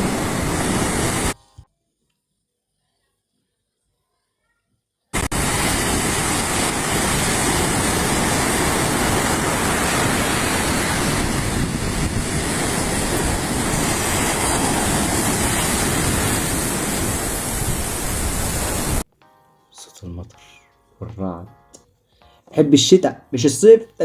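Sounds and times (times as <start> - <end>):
waves breaking on shore: 0.0 - 1.4, 5.2 - 19.0.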